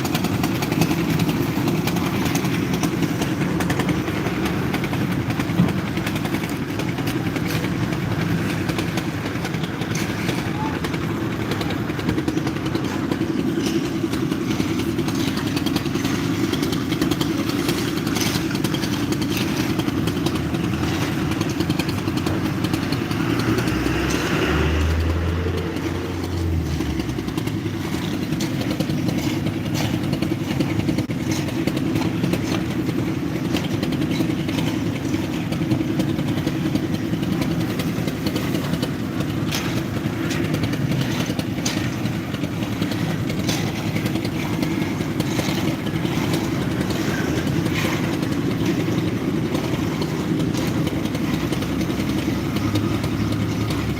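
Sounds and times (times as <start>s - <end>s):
machinery engine running: 0.0s - 53.9s.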